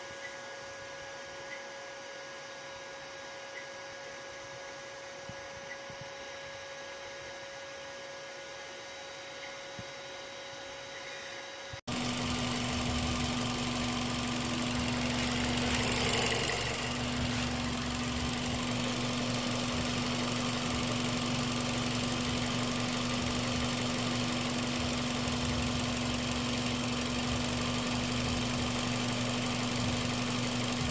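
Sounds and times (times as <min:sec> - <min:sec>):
car engine idling: 0:11.9 - 0:30.9.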